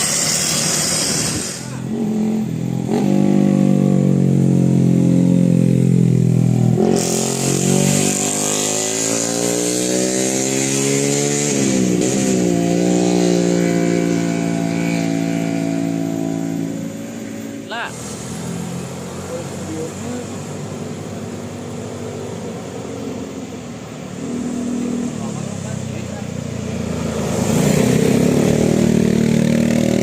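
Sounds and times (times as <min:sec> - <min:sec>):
bus diesel engine accelerating: 0:00.0 - 0:09.3, 0:16.2 - 0:30.0.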